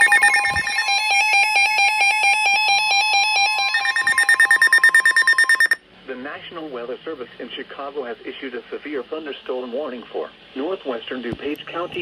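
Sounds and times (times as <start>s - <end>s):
rapid beeping alarms: 0.0s - 5.8s
steady warning tone: 0.0s - 5.8s.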